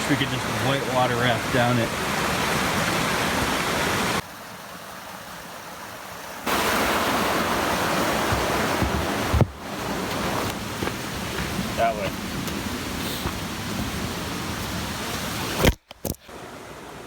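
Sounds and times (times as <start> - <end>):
river rushing in whitewater: 0.0 - 4.2, 6.4 - 15.6.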